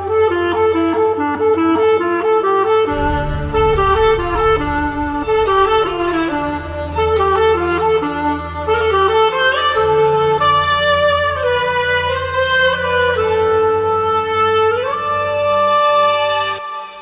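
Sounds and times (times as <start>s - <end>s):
instrumental music: 2.8s - 17.0s.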